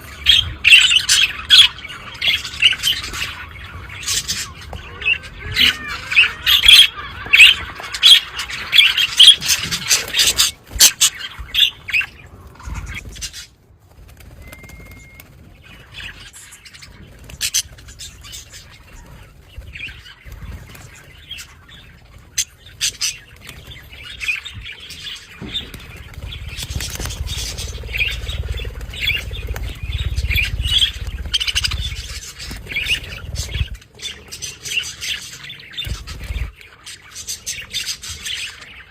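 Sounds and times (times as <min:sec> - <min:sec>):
budgerigars chattering and chirping: 0:00.0 - 0:13.6, 0:14.4 - 0:38.9
low rumble: 0:25.3 - 0:33.8.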